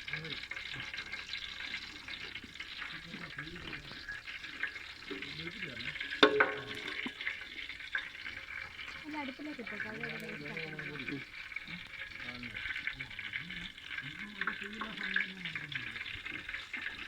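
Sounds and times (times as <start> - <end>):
food sizzling in a pan: 0.0 - 17.0
stirring in a pan: 0.0 - 17.0
sharp metallic clang: 6.2 - 7.0.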